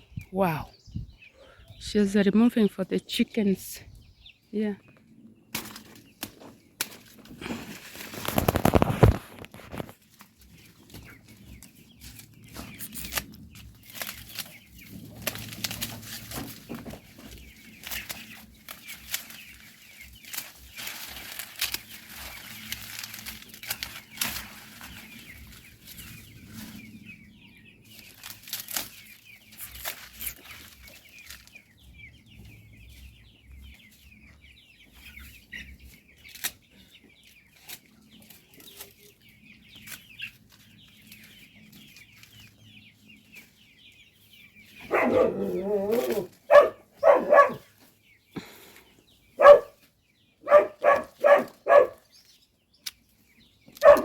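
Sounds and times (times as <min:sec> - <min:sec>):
chickens clucking: 0:00.0 - 0:54.0
sharp clicks and rustles: 0:05.5 - 0:26.7.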